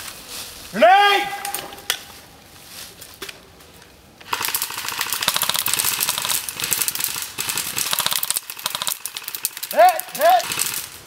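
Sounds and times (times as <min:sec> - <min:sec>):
airsoft gun firing full auto: 0:04.3 - 0:10.9.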